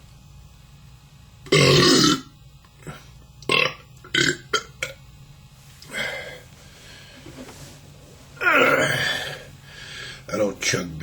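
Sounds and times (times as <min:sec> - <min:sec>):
man belching: 0:01.5 - 0:02.4, 0:03.4 - 0:05.0, 0:08.4 - 0:09.4.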